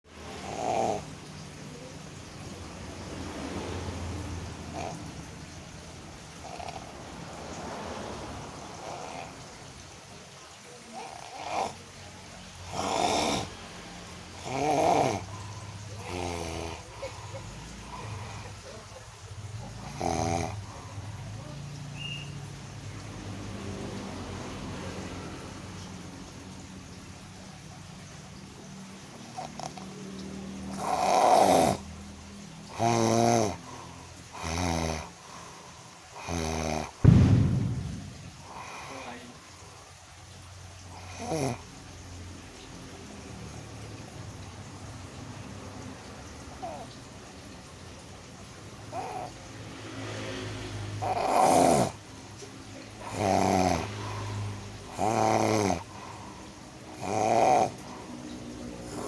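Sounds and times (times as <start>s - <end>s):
loud snoring: 0.1s - 10.0s, 10.9s - 21.7s, 29.2s - 30.0s, 30.7s - 32.0s, 32.6s - 39.4s, 40.9s - 41.8s, 48.9s - 52.2s, 52.9s - 59.0s
low rumbling snore: 0.1s - 10.1s, 10.9s - 26.3s, 29.2s - 30.1s, 30.7s - 32.0s, 32.6s - 39.6s, 40.8s - 41.8s, 48.9s - 59.0s
person snoring: 0.3s - 1.1s, 4.7s - 5.2s, 6.4s - 8.1s, 8.7s - 9.4s, 11.0s - 11.8s, 12.6s - 13.7s, 14.4s - 18.8s, 19.7s - 20.9s, 51.0s - 52.0s, 53.0s - 56.1s, 57.0s - 57.8s.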